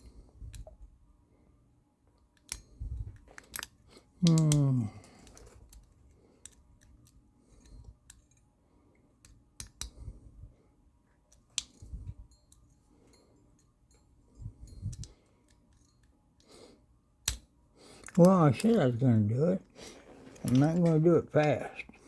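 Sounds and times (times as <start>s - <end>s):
lock pick clicks: 2.4s - 7.2s.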